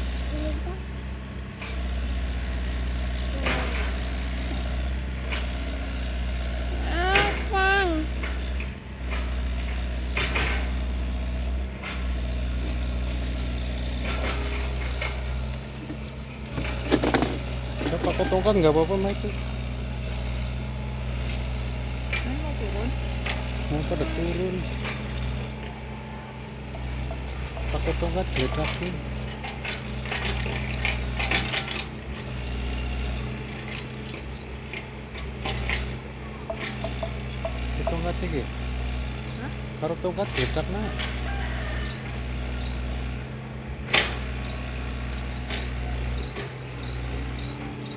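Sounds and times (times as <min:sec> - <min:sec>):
excavator diesel engine running: 0:00.0 - 0:47.9
metallic clanks and knocks: 0:14.0 - 0:18.5.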